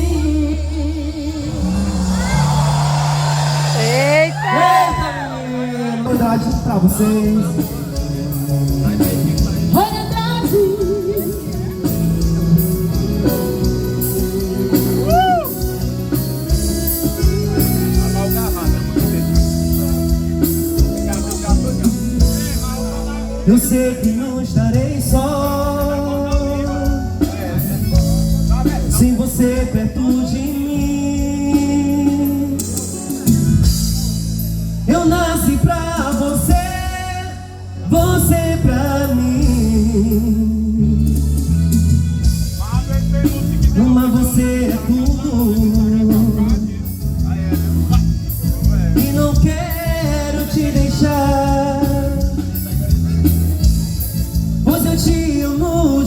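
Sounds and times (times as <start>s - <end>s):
band playing: 0.0s - 56.0s
guitar: 0.0s - 56.0s
held bass notes: 0.0s - 56.0s
drum beat with cymbals: 37.9s - 56.0s.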